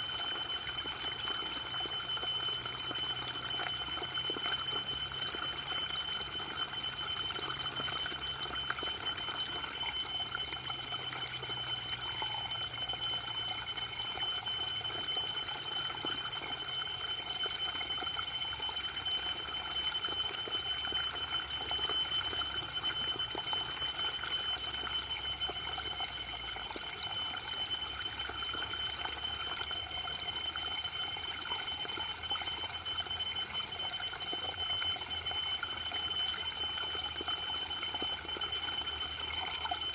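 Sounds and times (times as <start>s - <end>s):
high-pitched ringing tone: 0.0s - 39.9s.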